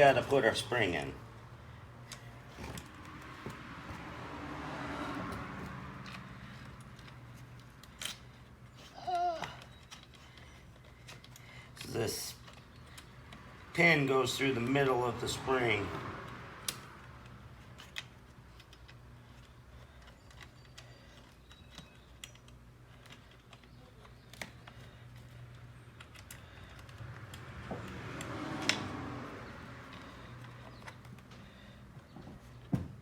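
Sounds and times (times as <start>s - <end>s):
small plastic parts clicking: 16.6s - 28.8s.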